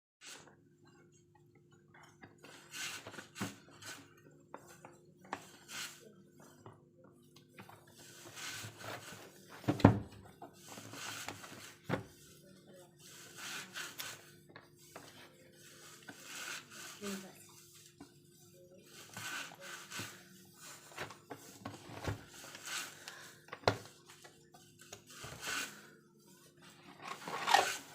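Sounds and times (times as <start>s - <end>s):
packaging rustling and scraping: 26.8s - 27.9s.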